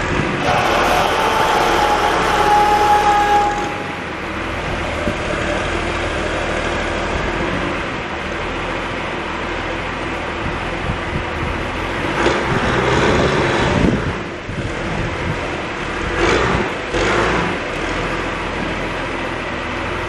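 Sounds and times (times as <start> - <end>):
steady high whine: 0.0 - 12.1
diesel engine running: 0.0 - 20.0.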